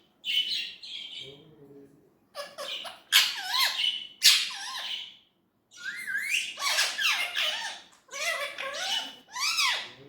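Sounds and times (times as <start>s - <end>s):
parrot squawking and warbling: 2.3s - 5.2s, 5.8s - 10.0s.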